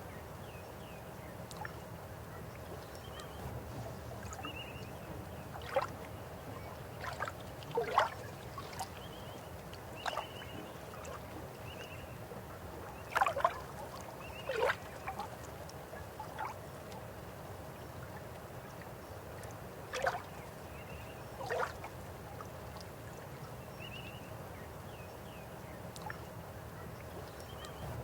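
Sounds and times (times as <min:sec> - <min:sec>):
river water running: 0:00.0 - 0:28.0
water gurgling splashes: 0:07.0 - 0:08.8.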